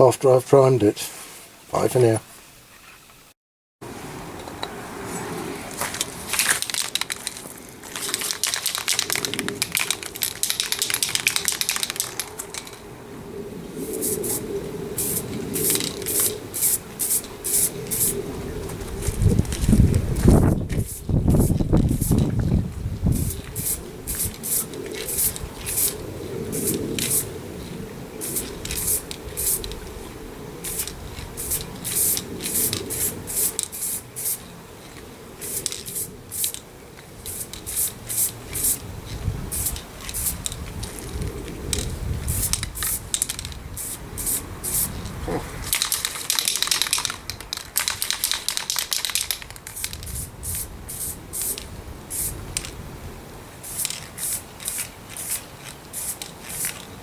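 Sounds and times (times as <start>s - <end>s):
wind rumble on microphone: 8.8s - 34.2s, 35.0s - 45.9s, 47.1s - 54.8s
aerosol spray can hissing: 13.8s - 14.4s, 15.0s - 18.2s, 20.8s - 22.2s, 23.2s - 26.0s, 26.6s - 27.3s, 28.2s - 29.7s, 30.7s - 34.4s, 35.4s - 36.6s, 37.3s - 38.8s, 39.5s - 40.4s, 42.3s - 43.1s, 43.8s - 44.9s, 49.7s - 52.3s, 53.7s - 55.4s, 56.0s - 56.8s.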